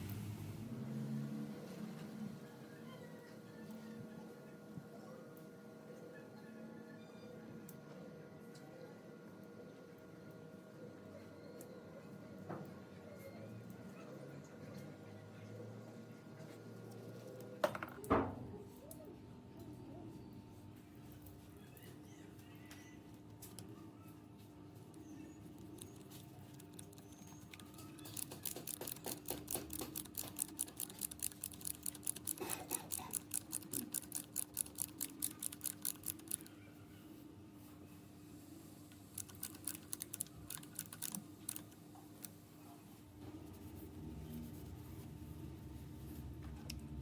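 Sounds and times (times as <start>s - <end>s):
sharp clicks: 25.6s - 36.5s, 39.1s - 42.4s.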